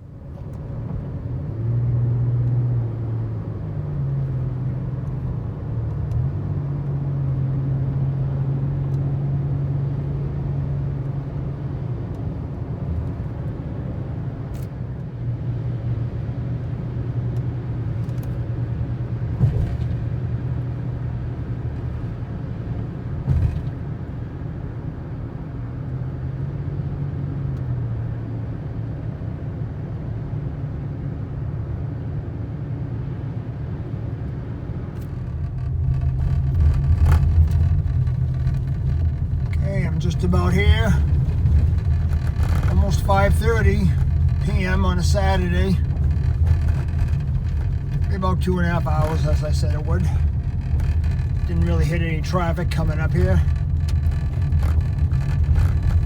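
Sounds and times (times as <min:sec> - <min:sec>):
road noise: 0:00.0 - 0:56.0
truck engine drone: 0:34.7 - 0:56.0.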